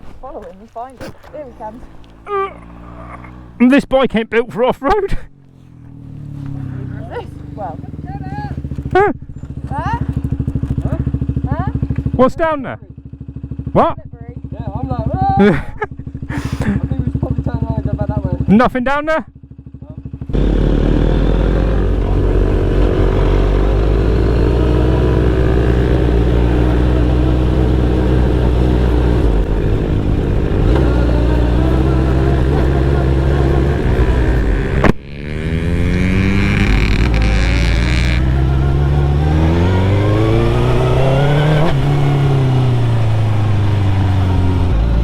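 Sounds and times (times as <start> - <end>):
motorcycle engine revving: 0.0 - 3.9, 5.2 - 18.6, 19.3 - 45.0.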